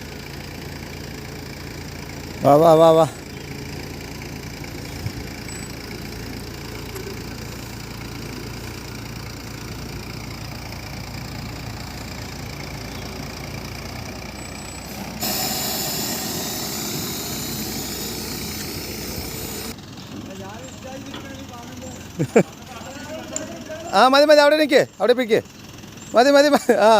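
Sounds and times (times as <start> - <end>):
heavy machine engine idling: 0.0 - 26.9
loud hiss: 14.9 - 19.8.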